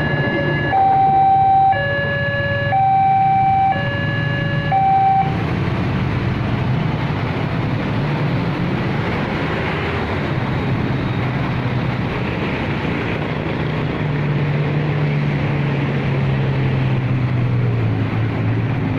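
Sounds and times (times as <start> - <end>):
level-crossing warning siren: 0.0 - 5.6
vehicle engines running: 0.0 - 18.9.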